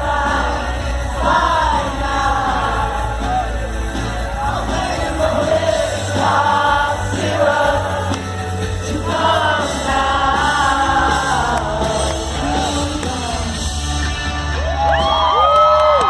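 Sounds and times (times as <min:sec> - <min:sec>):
person singing: 0:00.0 - 0:13.9
rock band playing live: 0:00.0 - 0:16.0
steady bass: 0:00.0 - 0:16.0.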